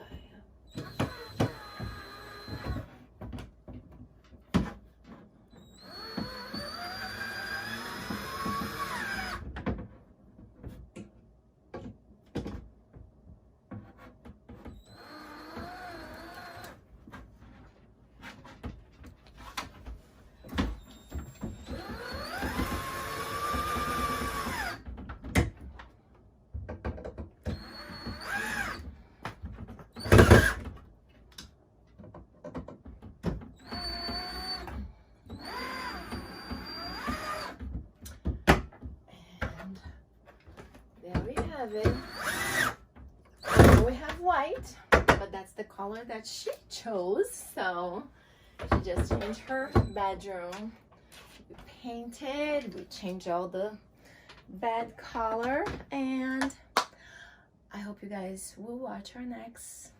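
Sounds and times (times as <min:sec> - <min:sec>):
power drill driving screws: 0:00.7 - 0:02.9, 0:05.6 - 0:09.4, 0:14.8 - 0:16.8, 0:20.8 - 0:24.8, 0:27.4 - 0:28.9, 0:30.0 - 0:30.6, 0:33.6 - 0:37.6, 0:41.7 - 0:42.8, 0:43.4 - 0:43.9.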